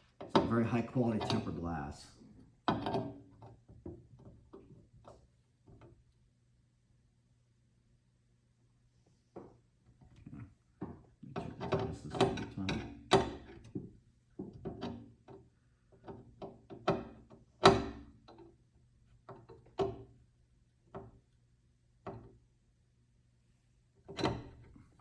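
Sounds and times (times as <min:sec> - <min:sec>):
metal door handle clattering: 0:01.1 - 0:01.5.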